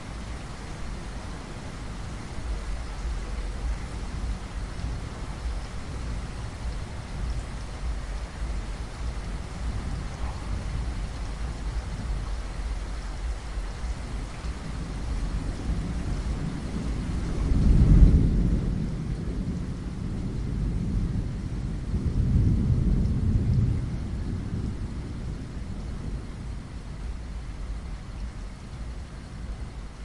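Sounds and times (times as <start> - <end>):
rain against a window: 0.0 - 30.0
rolling thunder: 3.5 - 13.0, 14.0 - 27.8.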